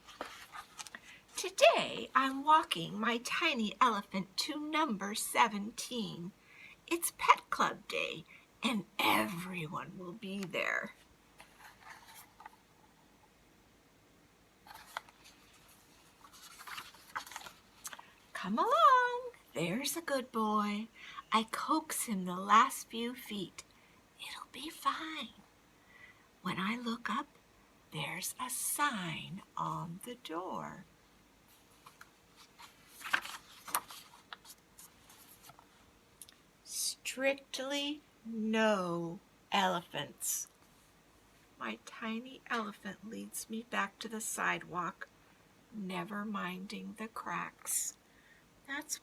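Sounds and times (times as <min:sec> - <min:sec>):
book page rustling: 0:00.0 - 0:01.2, 0:11.4 - 0:12.7, 0:14.6 - 0:18.2, 0:31.5 - 0:35.9.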